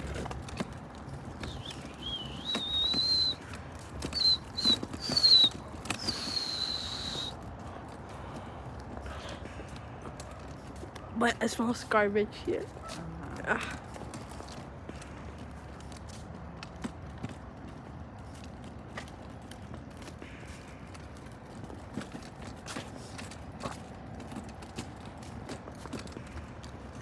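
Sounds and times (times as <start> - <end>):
low outdoor rumble: 0.0 - 10.2.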